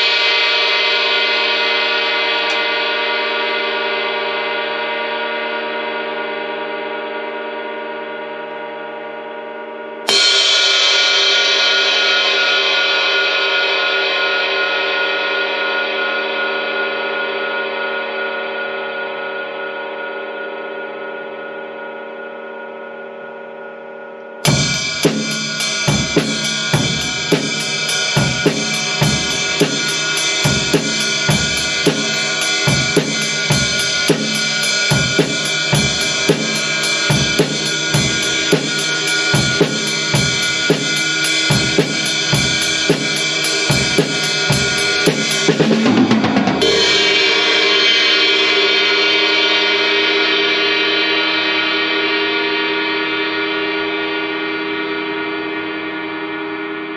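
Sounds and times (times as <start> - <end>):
cymbal crash: 10.1 - 15.4, 24.4 - 52.8
drum kit groove: 24.5 - 49.5
ride cymbal ringing: 24.5 - 49.5.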